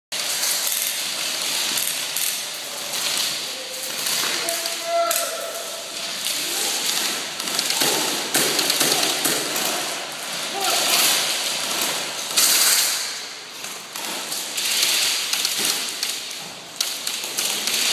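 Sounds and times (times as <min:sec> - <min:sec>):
airsoft guns firing: 0:06.8 - 0:13.3.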